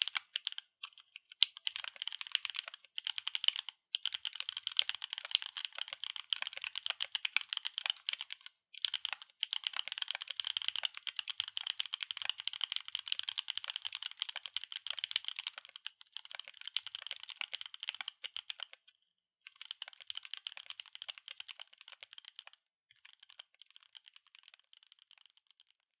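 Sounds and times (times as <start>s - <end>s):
mechanical keyboard clacks: 1.4s - 18.7s.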